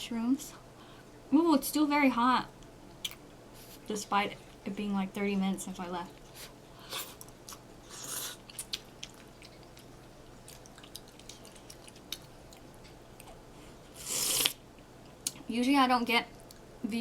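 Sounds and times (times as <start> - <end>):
chewing with wet mouth clicks: 7.2 - 13.4, 16.3 - 16.7.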